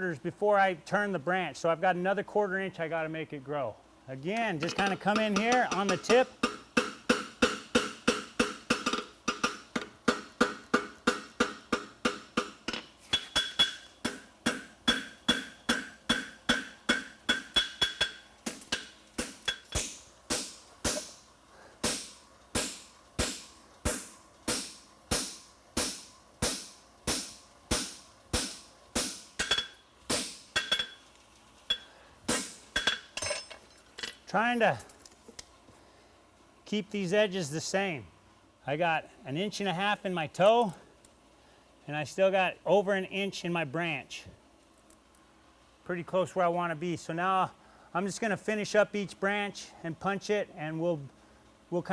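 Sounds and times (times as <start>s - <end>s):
hammer striking horseshoe on anvil: 4.6s - 21.2s, 21.8s - 31.1s, 31.7s - 34.2s.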